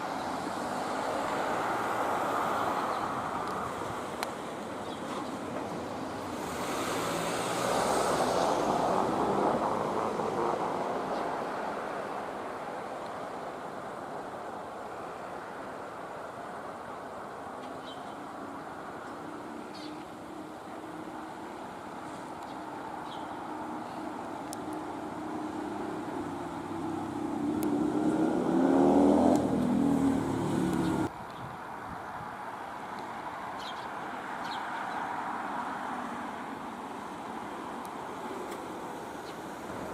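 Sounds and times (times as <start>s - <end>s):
vehicle engine passing by: 6.3s - 11.8s, 25.0s - 31.1s.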